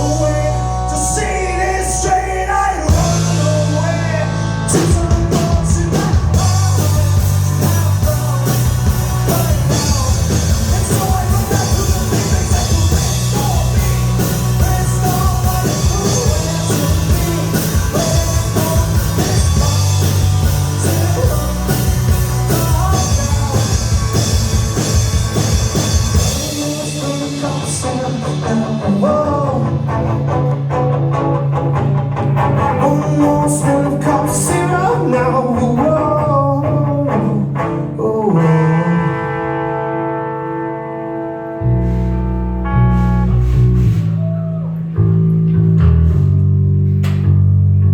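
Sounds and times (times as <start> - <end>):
person singing: 0.0 - 24.9, 26.1 - 30.6, 32.6 - 40.2
bass: 0.0 - 47.9
drums: 0.0 - 47.9
electric guitar: 0.0 - 47.9.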